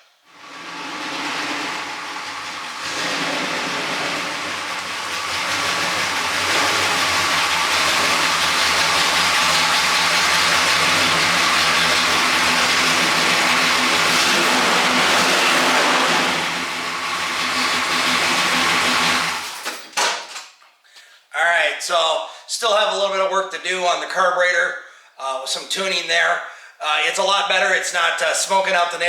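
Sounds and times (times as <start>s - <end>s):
car engine running at low speed: 0.4s - 19.6s.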